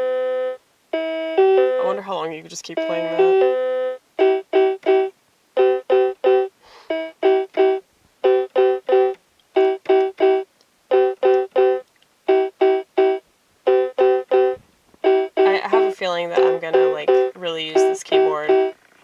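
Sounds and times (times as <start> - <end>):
electronic keyboard chords: 0.0 - 19.0.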